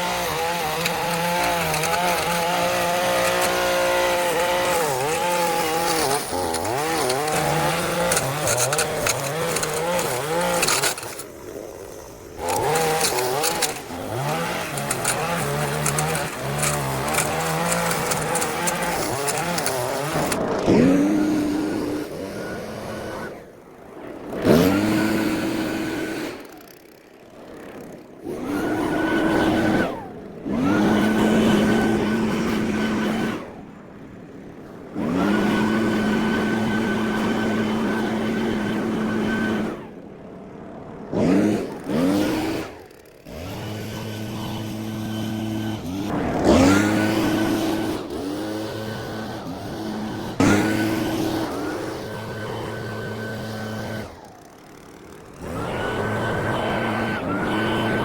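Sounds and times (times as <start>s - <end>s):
lawn mower engine running: 0.0s - 23.2s, 34.9s - 39.7s, 41.3s - 58.0s.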